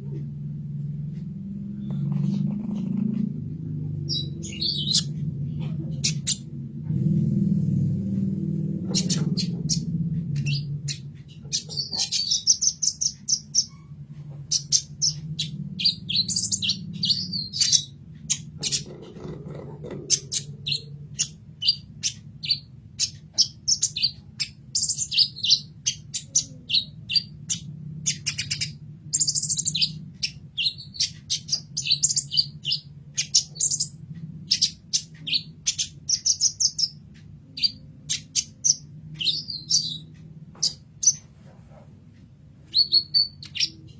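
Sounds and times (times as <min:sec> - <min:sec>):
steady low hum: 0:00.0 - 0:43.9
sunbird singing: 0:14.5 - 0:19.3.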